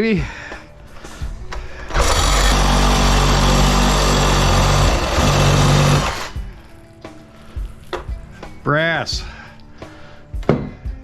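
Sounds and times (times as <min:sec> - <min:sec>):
power saw cutting metal pipe: 0:01.9 - 0:06.5.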